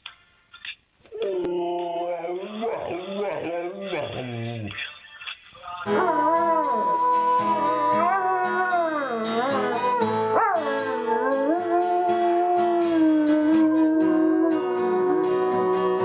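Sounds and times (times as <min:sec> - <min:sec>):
guitar music: 0:05.7 - 0:16.0
dog howling: 0:05.9 - 0:16.0.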